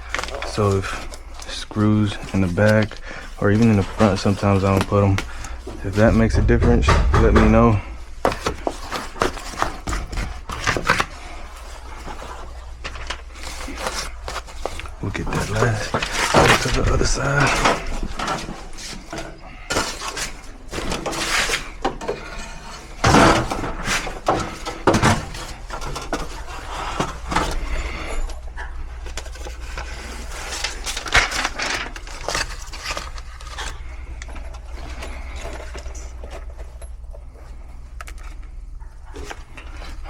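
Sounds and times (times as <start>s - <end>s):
steady low hum: 0.8s - 20.9s
sheet metal ductwork clanking: 5.8s - 8.4s.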